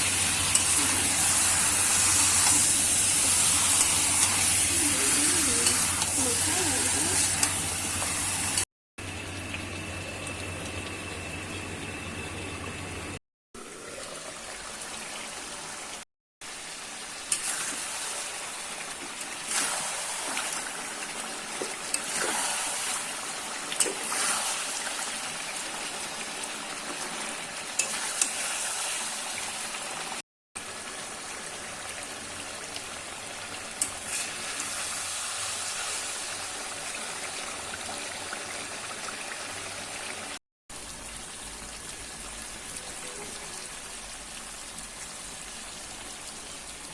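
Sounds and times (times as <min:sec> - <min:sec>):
food sizzling in a pan: 0:00.0 - 0:09.2, 0:13.6 - 0:46.9.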